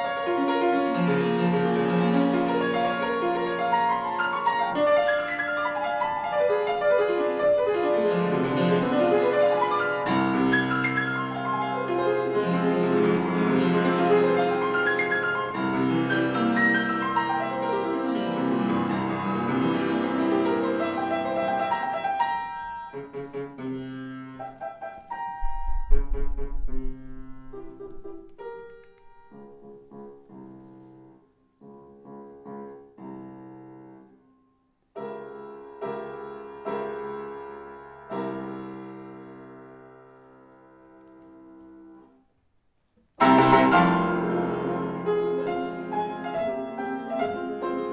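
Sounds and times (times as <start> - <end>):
classical piano music: 0.0 - 47.9
low thump: 25.4 - 28.3.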